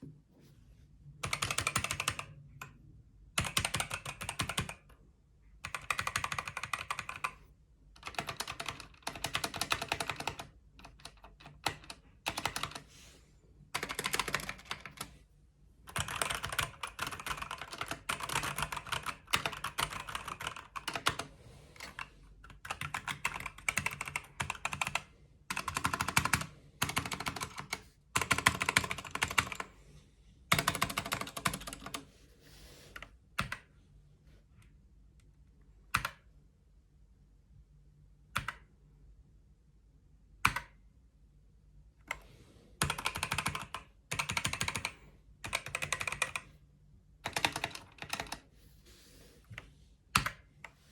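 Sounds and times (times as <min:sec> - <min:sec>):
typing on computer keyboard: 0:01.2 - 0:02.8, 0:03.4 - 0:05.0, 0:05.6 - 0:12.9, 0:13.8 - 0:15.1, 0:15.9 - 0:29.7, 0:30.5 - 0:32.1, 0:33.0 - 0:33.7, 0:35.9 - 0:36.3, 0:38.4 - 0:38.7, 0:40.4 - 0:40.8, 0:42.8 - 0:46.5, 0:47.2 - 0:48.5, 0:49.5 - 0:50.8.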